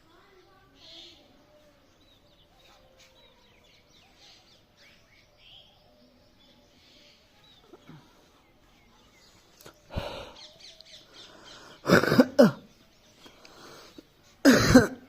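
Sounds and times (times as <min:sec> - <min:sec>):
faint bird chirps: 0:00.0 - 0:14.4
person coughing: 0:11.8 - 0:12.6, 0:14.4 - 0:15.0.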